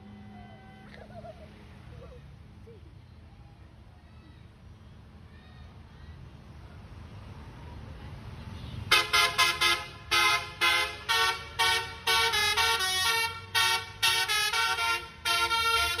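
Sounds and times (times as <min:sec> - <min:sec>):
multi-tone vehicle horn tune: 0:08.5 - 0:16.0.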